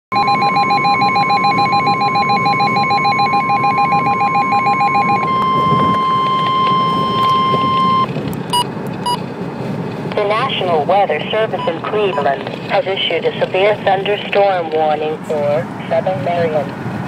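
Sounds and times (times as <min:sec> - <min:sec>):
pulsing warbling tone: 0:00.1 - 0:08.1
electronic alarm tone: 0:00.1 - 0:09.2.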